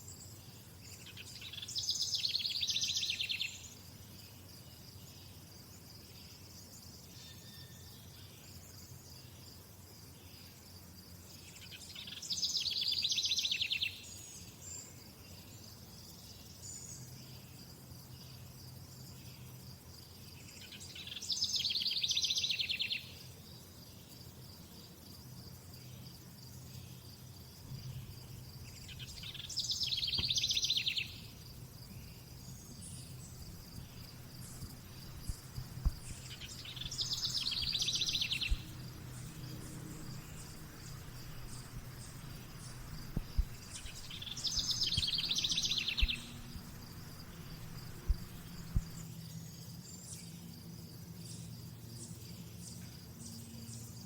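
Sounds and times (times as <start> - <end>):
songbird singing: 0.0 - 3.8, 11.3 - 19.6, 20.2 - 50.4
cricket trill: 1.3 - 54.0.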